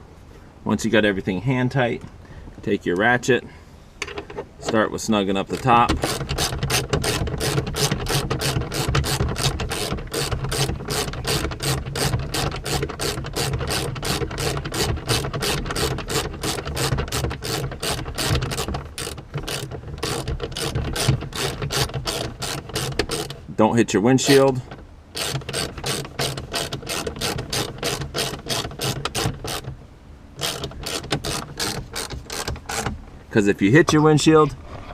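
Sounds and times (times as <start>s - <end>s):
socket ratchet clicking: 5.5s - 23.4s, 25.2s - 29.7s, 30.4s - 33.0s.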